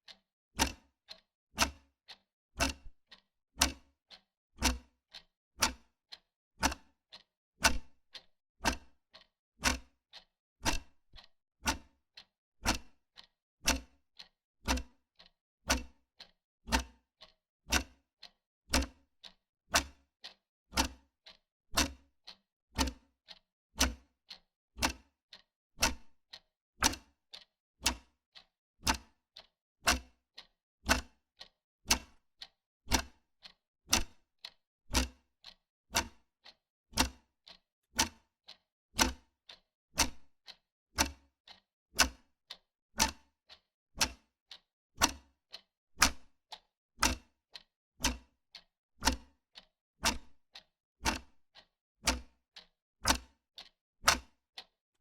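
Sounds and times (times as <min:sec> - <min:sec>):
wall clock ticking: 0:00.6 - 0:01.8, 0:03.6 - 0:03.8, 0:24.8 - 0:28.1, 0:28.8 - 0:31.2, 0:31.9 - 0:32.2, 0:32.9 - 0:42.2, 0:43.0 - 0:44.3, 0:45.0 - 0:48.2, 0:51.0 - 0:52.2, 0:53.1 - 0:54.7.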